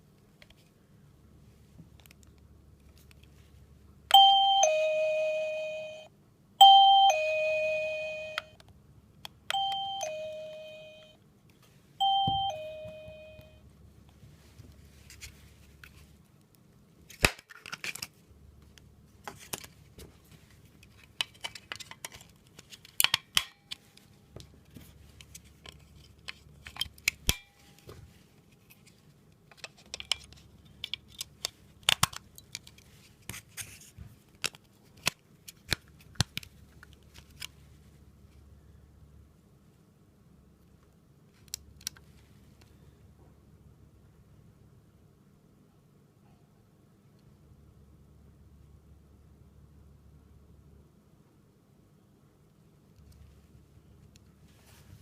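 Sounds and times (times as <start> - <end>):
two-note ding-dong chime: 4.1 - 8.5, 9.5 - 11.2, 12.0 - 13.6.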